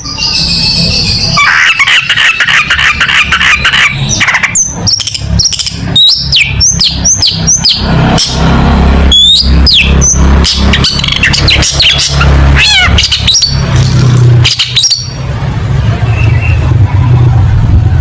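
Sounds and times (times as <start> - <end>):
bird chattering and whistling: 0.0 - 8.4, 9.1 - 13.8, 14.4 - 15.2.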